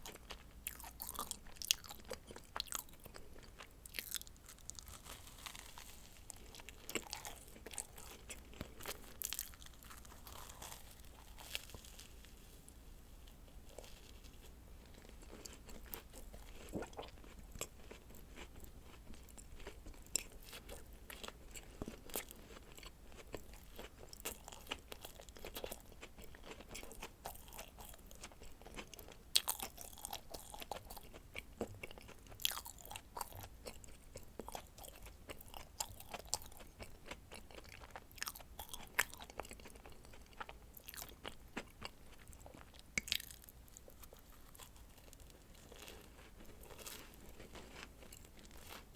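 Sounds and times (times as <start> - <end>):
wet chewing: 0.0 - 12.1, 15.0 - 48.9
crisp cookie crunching: 0.0 - 48.9.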